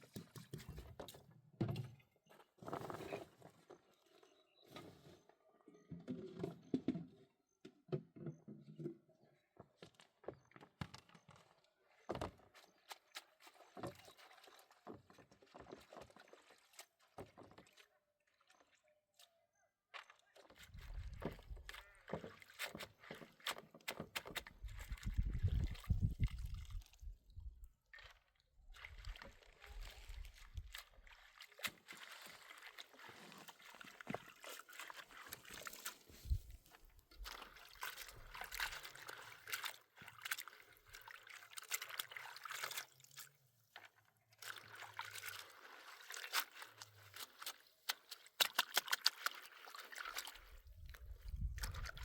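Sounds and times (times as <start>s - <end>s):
liquid sloshing and pouring: 20.5s - 52.0s.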